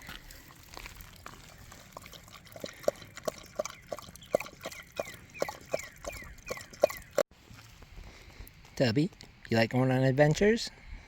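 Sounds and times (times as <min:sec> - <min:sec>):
dog lapping water: 0:00.3 - 0:07.2.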